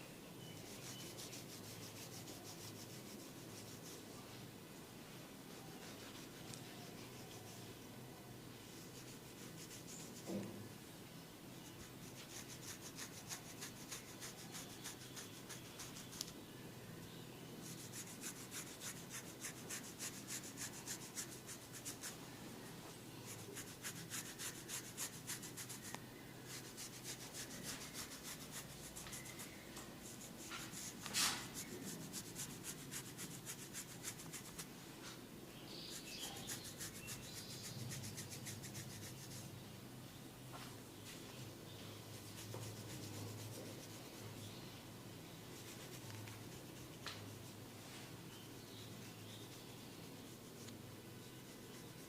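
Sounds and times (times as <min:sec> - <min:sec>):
rubbing and scratching on scalp: 0:00.5 - 0:04.1, 0:05.5 - 0:07.8, 0:08.6 - 0:10.3, 0:11.6 - 0:16.4, 0:17.6 - 0:22.2, 0:23.3 - 0:34.7, 0:35.7 - 0:39.5, 0:42.0 - 0:44.5, 0:45.4 - 0:52.0.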